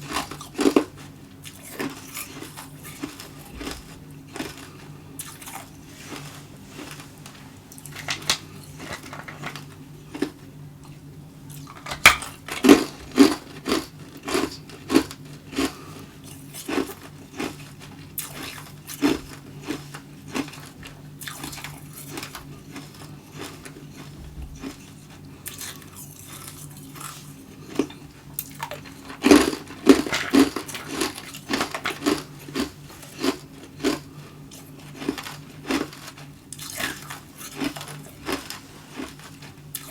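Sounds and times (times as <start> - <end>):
ice being chewed: 0.0 - 39.9.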